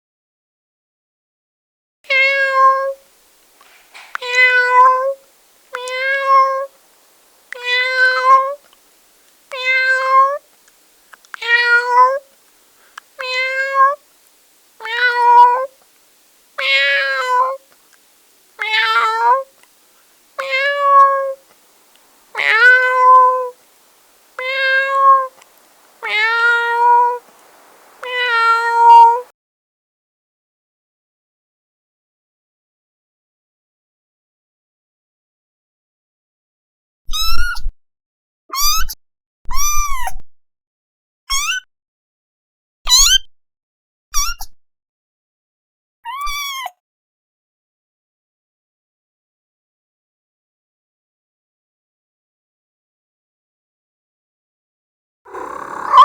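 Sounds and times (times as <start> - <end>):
cat meowing: 2.1 - 3.0, 3.9 - 5.2, 5.8 - 6.8, 7.5 - 8.6, 9.5 - 10.4, 11.4 - 12.3, 13.2 - 14.0, 14.8 - 15.8, 16.6 - 17.6, 18.6 - 19.5, 20.4 - 21.5, 22.3 - 23.6, 24.3 - 29.3, 46.1 - 46.8, 55.3 - 56.0.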